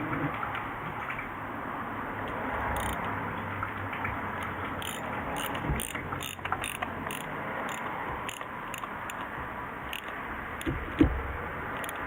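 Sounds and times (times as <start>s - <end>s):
ratchet wrench clicking: 2.8s - 3.0s, 4.8s - 9.3s, 9.9s - 10.8s, 11.8s - 12.0s.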